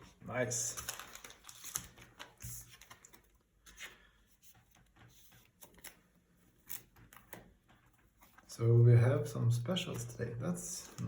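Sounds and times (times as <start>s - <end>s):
foil wrappers rustling: 0.5s - 4.1s.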